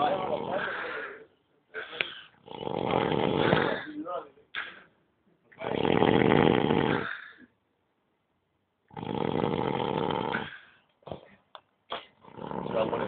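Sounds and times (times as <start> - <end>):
person snoring: 2.4 - 4.0, 5.6 - 7.4, 8.9 - 10.7, 12.2 - 13.0.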